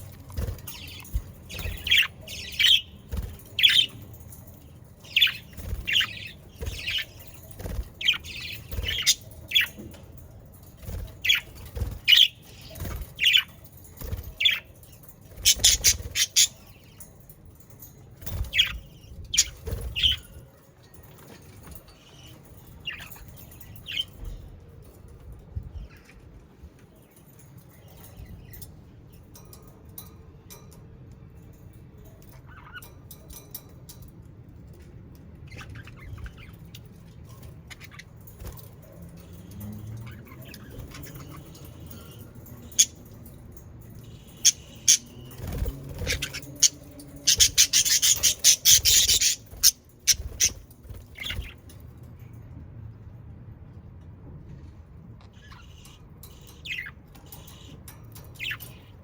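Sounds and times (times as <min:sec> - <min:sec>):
budgerigars chirping: 0:15.4 - 0:16.6, 0:44.3 - 0:50.6.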